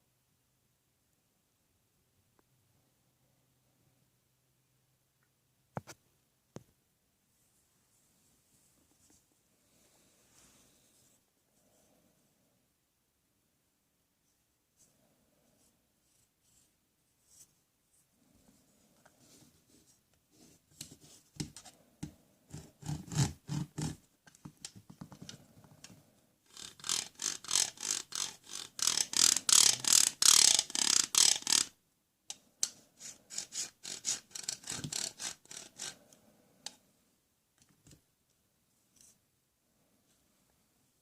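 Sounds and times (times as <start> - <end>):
plastic toy tool ratcheting: 26.5 - 31.8, 33.3 - 36.0.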